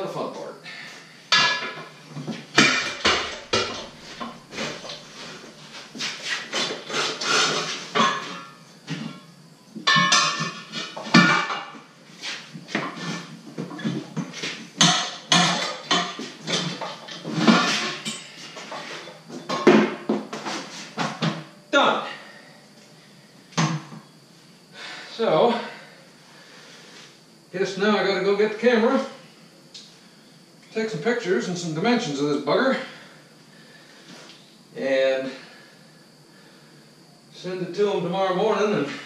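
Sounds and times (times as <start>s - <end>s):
tire tools clanking on wheel rim: 7.1s - 9.2s, 9.8s - 11.8s.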